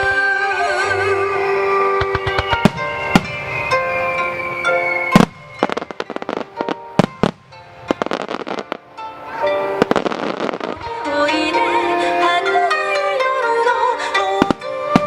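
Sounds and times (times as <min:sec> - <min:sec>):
music playing: 0:00.0 - 0:15.0
fireworks crackling pops: 0:01.9 - 0:09.0, 0:09.7 - 0:11.2, 0:14.2 - 0:15.0
firework bang: 0:02.0 - 0:08.8.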